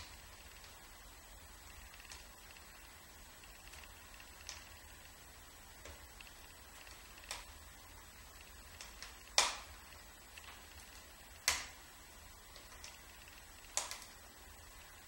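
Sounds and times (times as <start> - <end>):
wood fire crackling: 0.0 - 15.0
sharp fire pops: 5.8 - 7.5, 8.4 - 11.8, 12.5 - 14.2.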